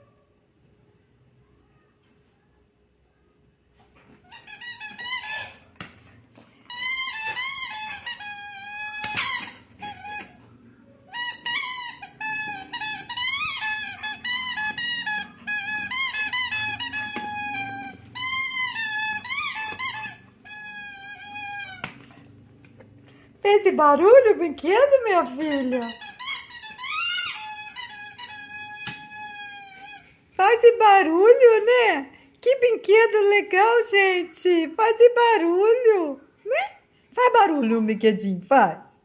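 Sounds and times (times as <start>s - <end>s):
squeaky rubber dog toy: 4.2s - 5.7s, 6.7s - 10.4s, 11.1s - 22.0s, 25.3s - 30.2s.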